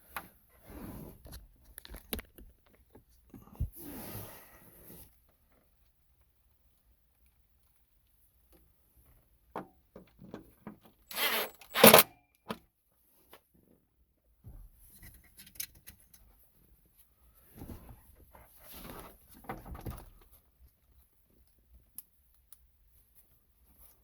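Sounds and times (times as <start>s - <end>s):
plastic parts scraping: 10.4s - 12.2s
screws driven into plastic: 11.1s - 12.1s.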